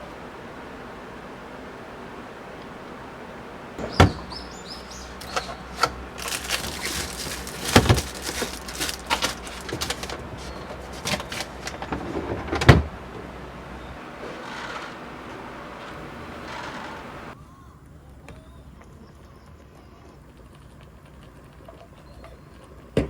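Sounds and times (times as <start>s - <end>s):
light clicks and rattles: 4.9s - 12.7s.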